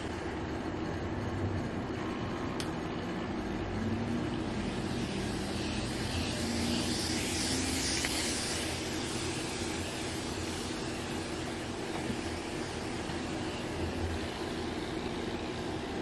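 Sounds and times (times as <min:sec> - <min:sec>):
hair steamer hissing: 0:03.7 - 0:16.0.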